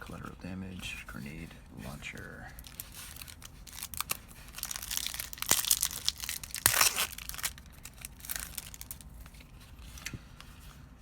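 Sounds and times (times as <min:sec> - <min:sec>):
foil wrapper crinkling and tearing: 0:01.9 - 0:10.8.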